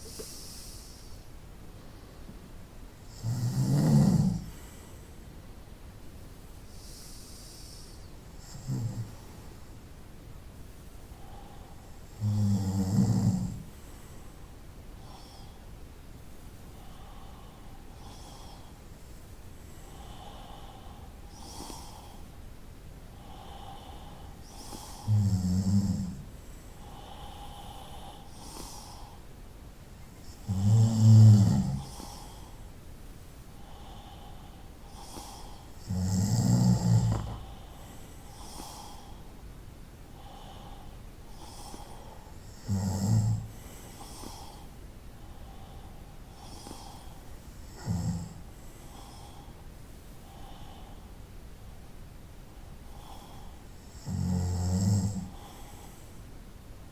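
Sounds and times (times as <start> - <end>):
soft breathing sounds: 0.0 - 56.9
person snoring loudly: 3.1 - 4.5, 12.2 - 13.6, 23.2 - 26.2, 30.3 - 32.4, 34.9 - 37.6, 42.5 - 44.6, 47.7 - 48.4, 53.8 - 55.6.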